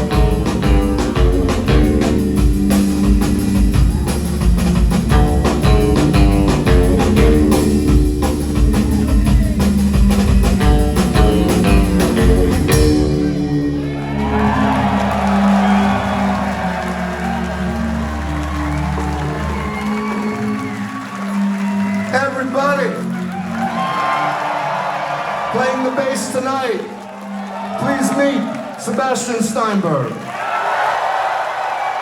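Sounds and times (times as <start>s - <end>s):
live rock band playing: 0.0s - 25.2s
audience cheering: 0.0s - 32.0s.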